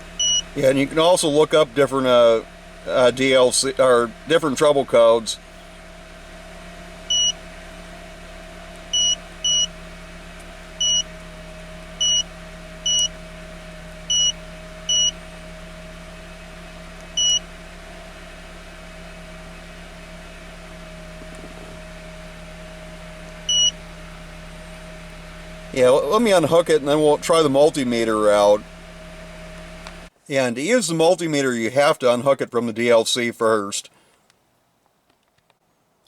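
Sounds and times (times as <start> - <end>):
steady low hum: 0.0 - 30.2
electronic key-press beeps: 0.2 - 0.4, 7.1 - 7.4, 10.8 - 11.1, 12.0 - 12.2, 12.9 - 13.1, 14.1 - 15.1, 17.2 - 17.4, 23.5 - 23.8.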